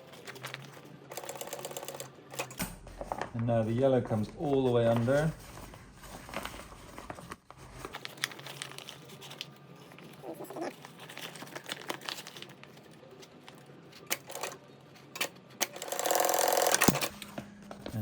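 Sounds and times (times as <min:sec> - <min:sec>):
fabric rustling and crinkling: 0:03.0 - 0:13.4.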